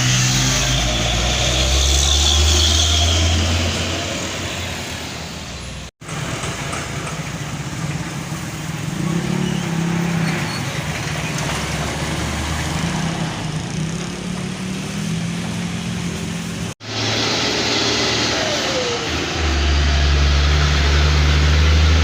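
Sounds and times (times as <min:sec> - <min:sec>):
traffic noise: 0:00.0 - 0:22.0
heavy truck engine running: 0:03.3 - 0:09.7.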